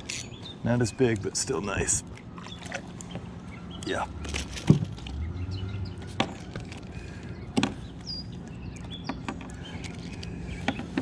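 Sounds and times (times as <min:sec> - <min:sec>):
bird chirping: 0:00.0 - 0:01.9, 0:05.1 - 0:11.0.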